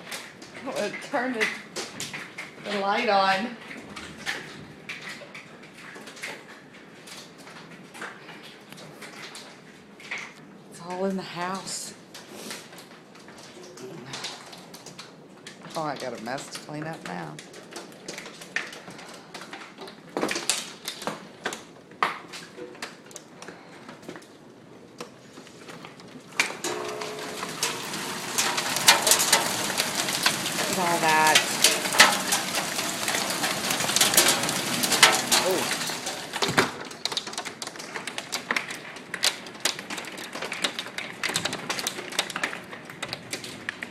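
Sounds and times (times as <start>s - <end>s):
hailstones clicking on hard surfaces: 0.0s - 24.4s, 25.0s - 43.9s
hailstones striking hard surfaces: 26.3s - 43.9s.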